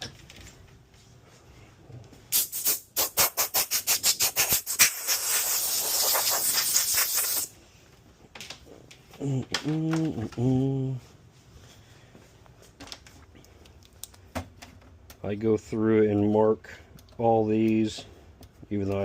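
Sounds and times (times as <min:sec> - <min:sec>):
compressed air hissing: 0:02.3 - 0:07.6.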